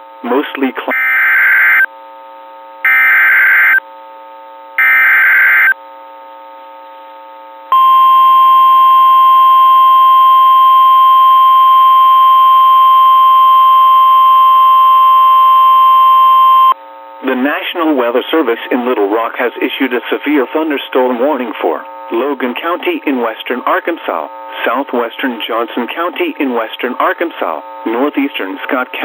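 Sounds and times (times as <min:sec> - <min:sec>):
steady alarm tone: 0:00.9 - 0:01.9, 0:02.8 - 0:03.8, 0:04.8 - 0:05.8, 0:07.7 - 0:16.8.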